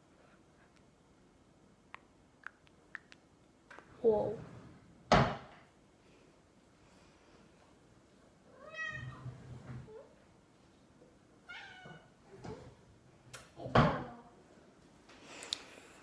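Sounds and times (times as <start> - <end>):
cat meowing: 8.5 - 9.2, 11.5 - 12.1.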